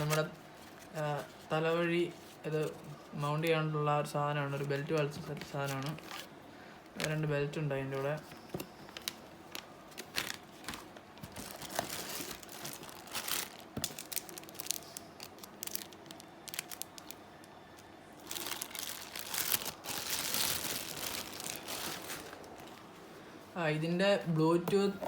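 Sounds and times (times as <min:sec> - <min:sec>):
packaging crinkling and rustling: 0:00.0 - 0:02.8, 0:04.5 - 0:06.3, 0:06.9 - 0:17.2, 0:18.2 - 0:23.0.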